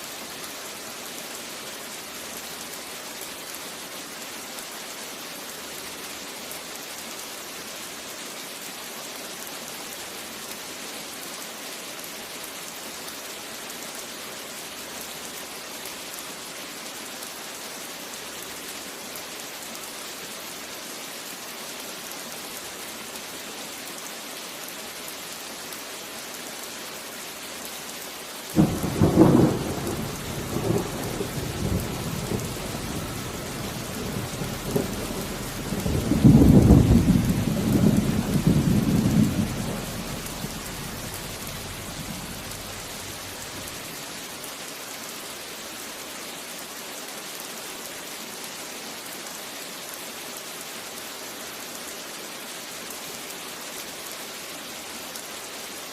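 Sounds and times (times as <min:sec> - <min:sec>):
heavy rain: 0:00.0 - 0:55.9
thunder rumbling: 0:28.6 - 0:43.7.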